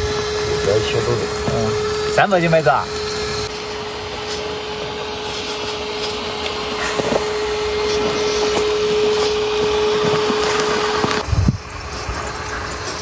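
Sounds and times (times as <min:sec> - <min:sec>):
electric motor whirring: 0:00.0 - 0:13.0.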